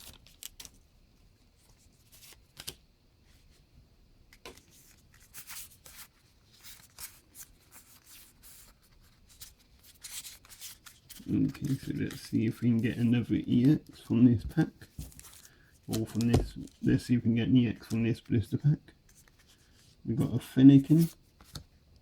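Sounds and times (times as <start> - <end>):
trading cards sliding and rustling: 4.4 - 21.6.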